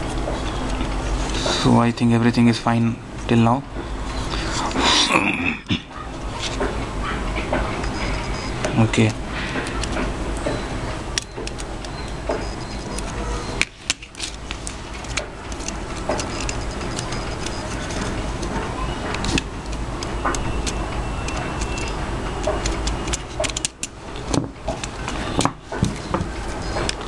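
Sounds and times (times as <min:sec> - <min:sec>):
plastic phone parts clicking: 0:11.2 - 0:27.0.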